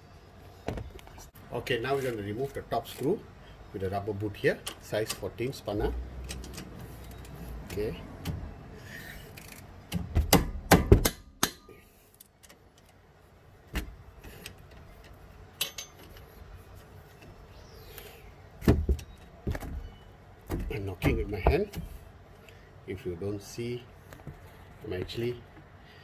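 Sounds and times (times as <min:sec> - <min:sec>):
spanner struck with metallic knocks: 0:09.9 - 0:11.8, 0:15.6 - 0:16.2.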